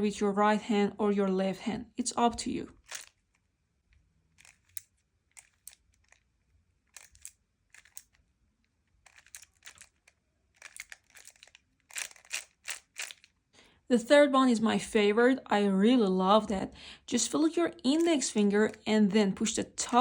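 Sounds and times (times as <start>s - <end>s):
puzzle cube plastic clicks: 2.8s - 3.4s, 4.3s - 8.3s, 8.9s - 13.4s.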